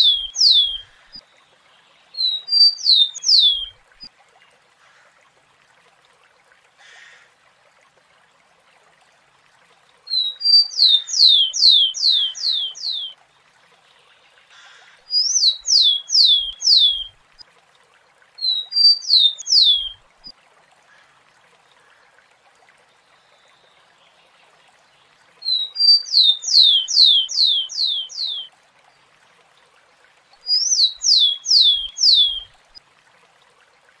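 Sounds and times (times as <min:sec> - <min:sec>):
sparrow singing: 0:00.0 - 0:00.9, 0:02.2 - 0:03.7, 0:10.1 - 0:13.1, 0:15.1 - 0:17.1, 0:18.4 - 0:20.0, 0:25.5 - 0:28.5, 0:30.5 - 0:32.4
faint steady hiss: 0:00.0 - 0:34.0.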